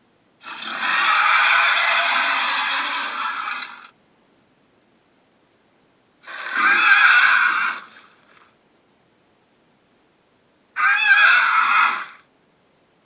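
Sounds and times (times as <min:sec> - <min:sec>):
screeching dragon roar: 0:00.4 - 0:03.9, 0:06.2 - 0:08.1, 0:10.8 - 0:12.2.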